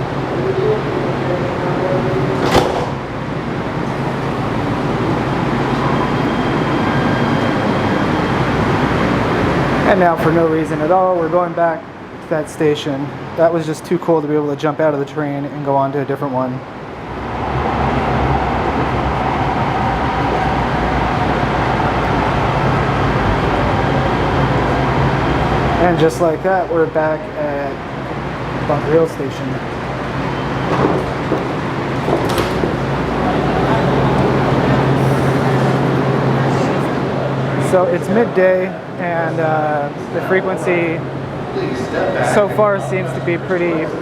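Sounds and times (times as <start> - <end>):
train rumbling underground: 0.0 - 12.2, 16.6 - 44.0
short knock: 2.4 - 3.1.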